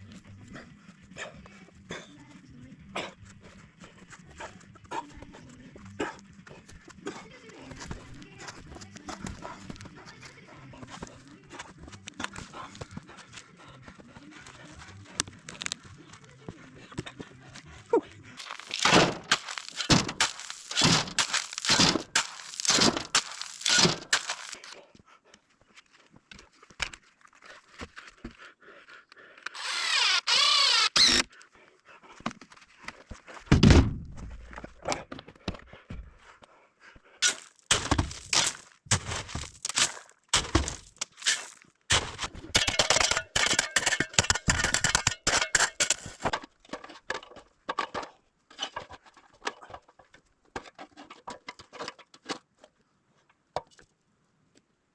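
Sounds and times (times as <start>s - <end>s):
heavy thud: 18.4s - 24.3s
knocks and clunks: 18.4s - 24.5s, 33.5s - 35.0s.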